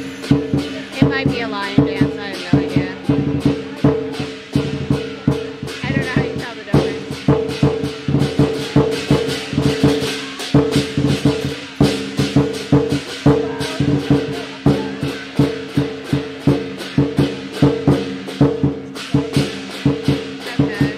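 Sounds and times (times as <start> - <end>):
cymbals crashing: 0.0 - 20.9
drum beating: 0.0 - 20.9.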